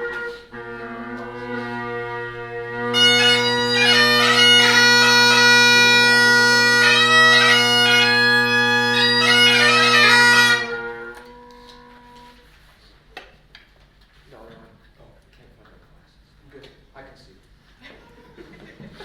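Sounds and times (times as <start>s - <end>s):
bagpipe drones: 0.0s - 12.4s
bagpipe chanter melody: 0.0s - 12.5s.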